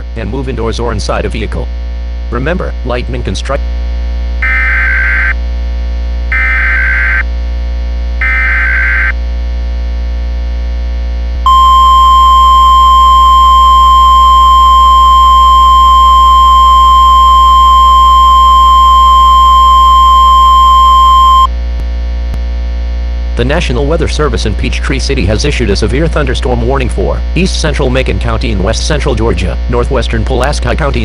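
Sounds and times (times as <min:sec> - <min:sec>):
low steady hum: 0:00.0 - 0:31.0
buzzing digital data bursts: 0:04.4 - 0:05.4, 0:06.3 - 0:07.3, 0:08.2 - 0:09.2
steady warning alarm tone: 0:04.4 - 0:05.4, 0:06.3 - 0:07.2, 0:08.2 - 0:09.2, 0:11.5 - 0:21.5.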